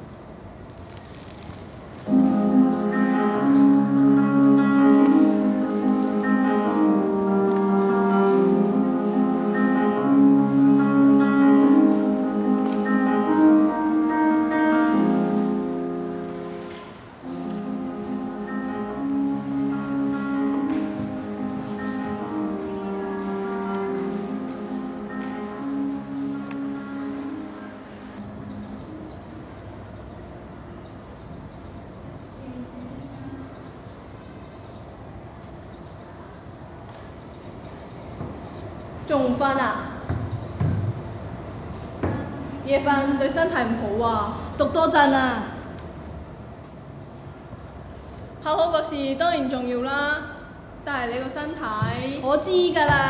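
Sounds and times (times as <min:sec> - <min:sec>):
instrumental background music: 0:02.1 - 0:28.2.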